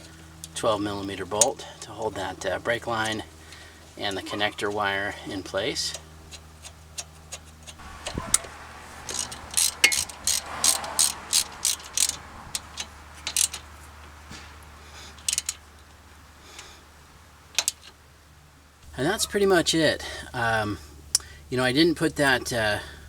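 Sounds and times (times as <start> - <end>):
socket ratchet clicking: 9.1 - 13.7.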